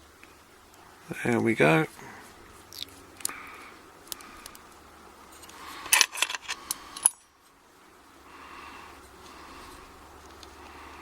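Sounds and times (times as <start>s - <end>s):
small metal lock parts clicking: 5.4s - 7.2s.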